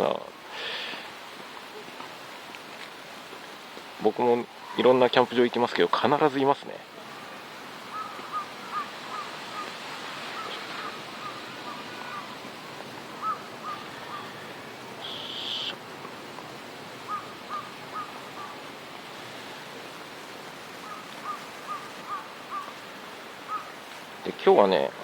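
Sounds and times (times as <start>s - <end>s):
background hiss: 0.0s - 25.0s
crows cawing: 7.2s - 15.8s, 17.0s - 18.8s, 20.8s - 23.8s
sharp hiss: 15.0s - 15.8s.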